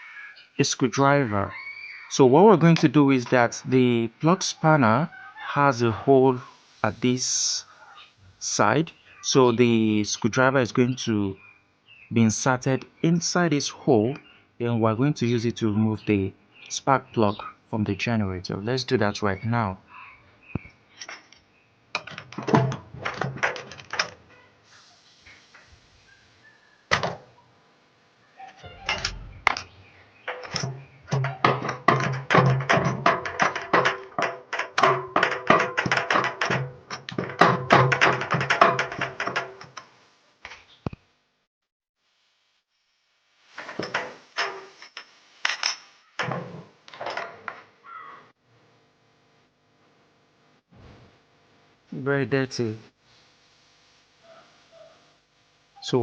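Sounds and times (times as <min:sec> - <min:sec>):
metal tools clicking and knocking: 0:22.0 - 0:24.2, 0:30.3 - 0:39.8.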